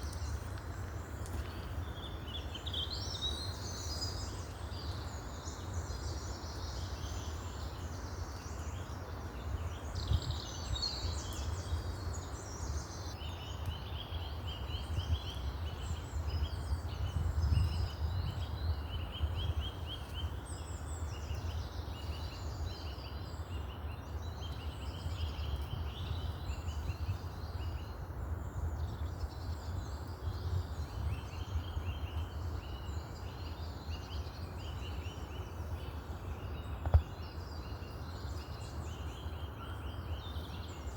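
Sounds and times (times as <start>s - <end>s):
birds singing: 0.0s - 40.9s.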